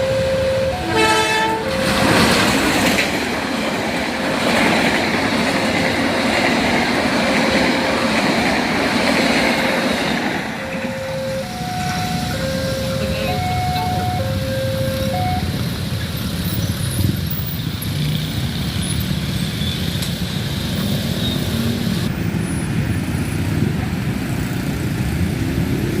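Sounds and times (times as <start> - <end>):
truck and car engines rumbling: 0.0 - 26.0
two-pitch tone: 10.6 - 15.6.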